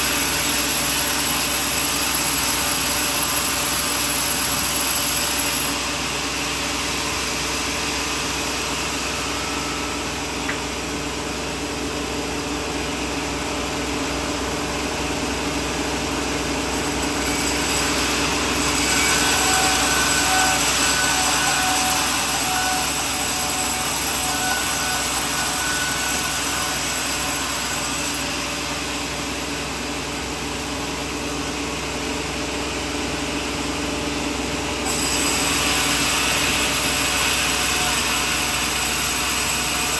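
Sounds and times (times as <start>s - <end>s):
sawmill sawing wood: 0.0s - 10.5s, 16.6s - 29.4s, 34.9s - 39.9s.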